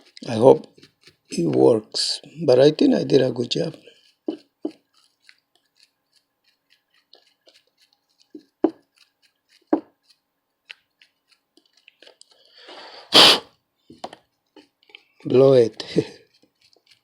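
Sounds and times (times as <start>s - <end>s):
small hard objects clicking: 4.0s - 12.5s, 14.1s - 17.0s
faint hiss: 12.6s - 13.5s.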